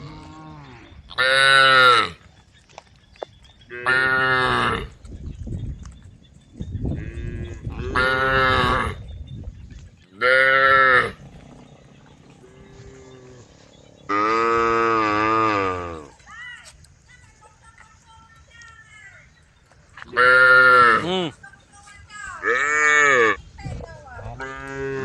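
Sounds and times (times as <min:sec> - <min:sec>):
cattle mooing: 0:00.0 - 0:02.2, 0:10.2 - 0:16.1, 0:24.4 - 0:25.0.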